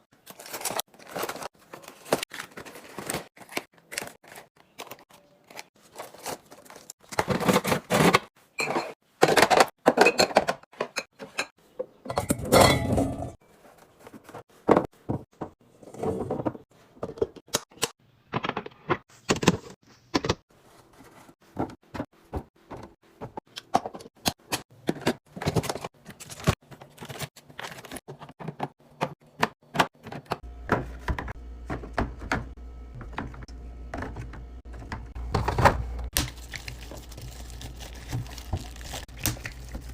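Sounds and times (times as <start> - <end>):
rustling and scraping: 12.3 - 17.0, 18.7 - 23.4.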